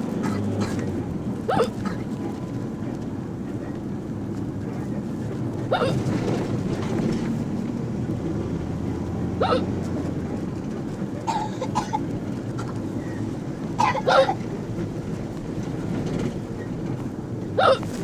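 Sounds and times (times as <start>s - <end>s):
bus rumble: 0.0s - 18.0s
person hiccuping: 1.5s - 2.0s, 5.7s - 6.0s, 9.4s - 9.7s, 13.8s - 14.4s, 17.6s - 18.0s.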